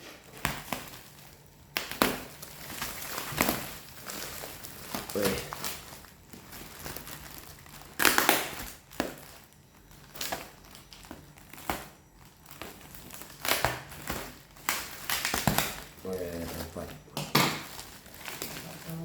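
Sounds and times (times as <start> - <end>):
plastic and paper crinkling: 0.0 - 19.0.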